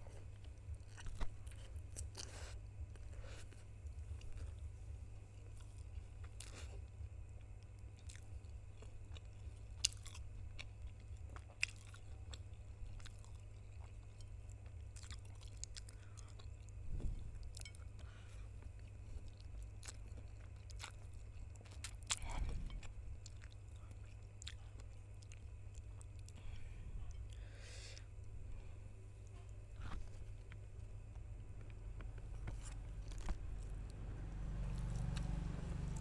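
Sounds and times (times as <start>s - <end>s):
person chewing noodles: 0.1s - 28.6s, 29.2s - 36.0s.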